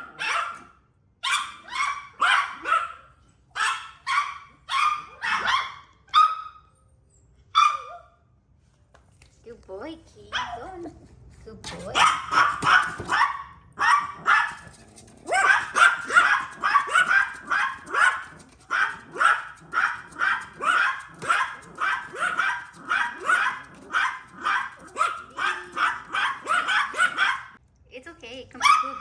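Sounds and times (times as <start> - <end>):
small dogs barking: 0.0 - 6.7, 11.8 - 27.6, 28.6 - 29.0.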